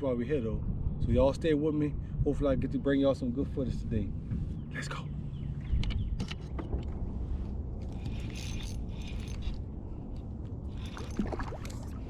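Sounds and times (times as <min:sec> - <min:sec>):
wind rumble on microphone: 0:00.0 - 0:12.0
fishing reel whirring and clicking: 0:08.0 - 0:09.6.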